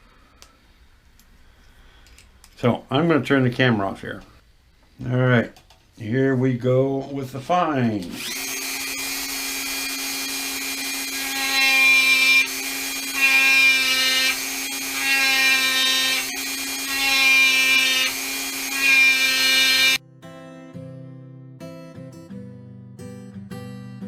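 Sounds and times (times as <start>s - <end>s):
small power tool sanding wood: 8.2s - 20.0s.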